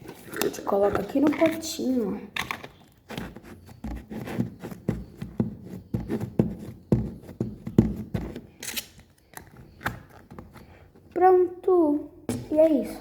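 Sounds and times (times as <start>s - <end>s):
slime squelching: 0.0s - 4.7s.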